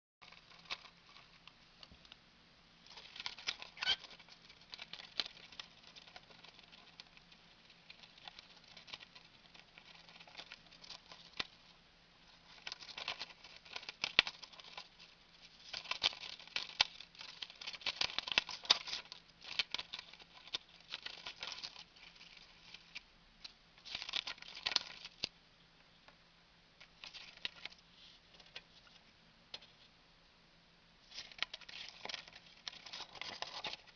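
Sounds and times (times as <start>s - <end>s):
bird tearing and chewing paper: 2.9s - 11.6s, 12.4s - 23.0s, 23.8s - 25.3s, 31.1s - 33.9s.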